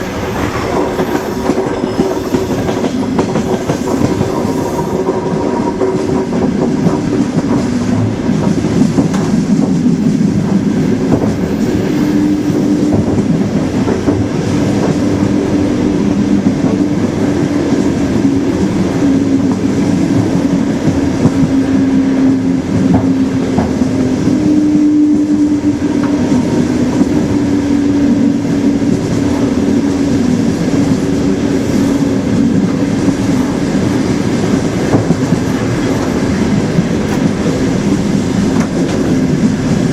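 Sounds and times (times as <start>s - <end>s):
train wheels rumbling on rails: 0.0s - 39.9s
clattering over rail joints: 29.0s - 39.9s.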